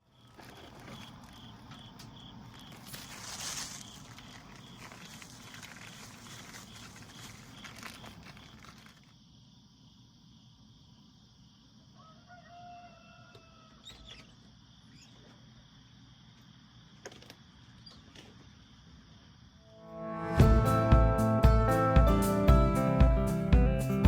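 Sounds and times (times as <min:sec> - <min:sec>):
insect chirping: 0:00.0 - 0:19.8
footsteps crunching on trail: 0:00.3 - 0:09.0.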